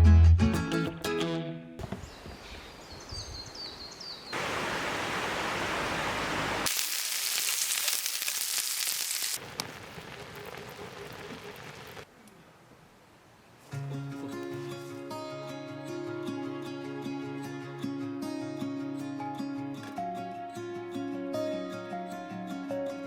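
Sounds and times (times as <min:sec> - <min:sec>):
bird chirps: 0:02.0 - 0:04.4
flowing water rushing: 0:04.3 - 0:12.1.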